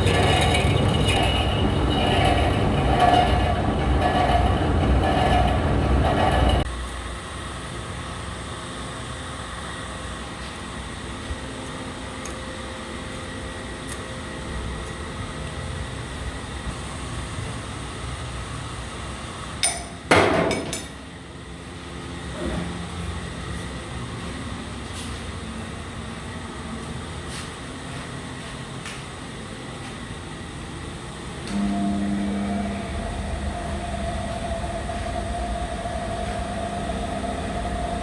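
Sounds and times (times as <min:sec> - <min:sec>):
lathe cutting metal: 0:00.0 - 0:06.7
machine humming: 0:00.0 - 0:17.4, 0:30.6 - 0:38.0.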